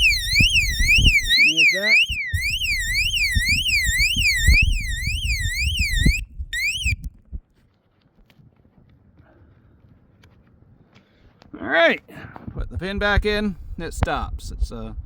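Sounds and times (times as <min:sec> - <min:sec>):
electronic siren sweeping: 0:00.0 - 0:07.1.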